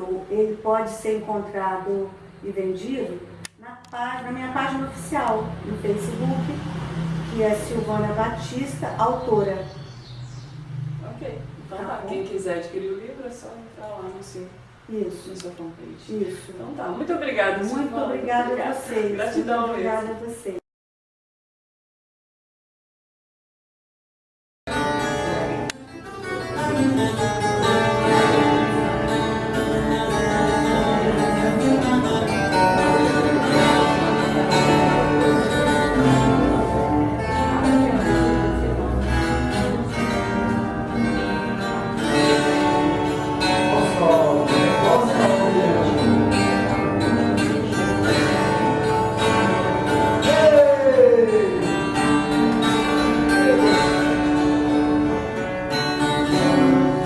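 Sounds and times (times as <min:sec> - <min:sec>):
instrumental guitar music: 0:24.7 - 0:57.0.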